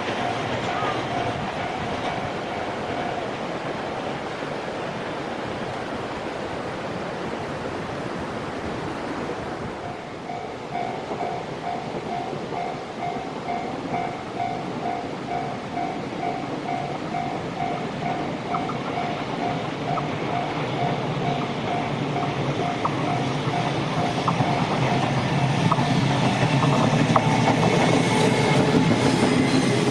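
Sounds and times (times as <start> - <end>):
freight train wheel and rail noise: 0.0 - 29.9
level crossing alarm bell: 10.3 - 26.6.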